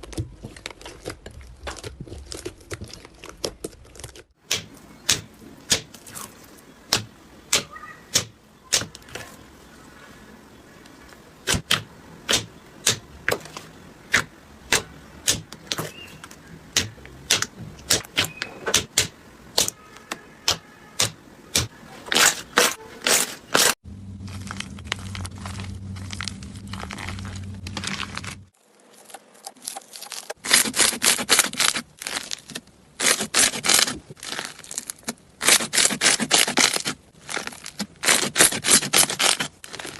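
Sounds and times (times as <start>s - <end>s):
low hum: 23.8s - 28.5s.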